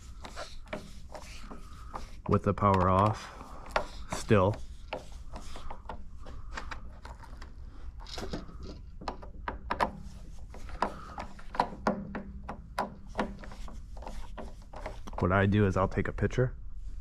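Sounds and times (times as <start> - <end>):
hands clicking and tapping on wiring: 0.0 - 15.4.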